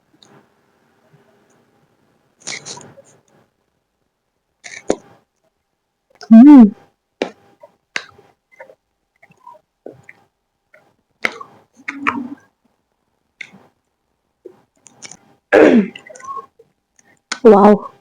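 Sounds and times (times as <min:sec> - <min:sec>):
mouth chewing food: 0:14.5 - 0:15.2.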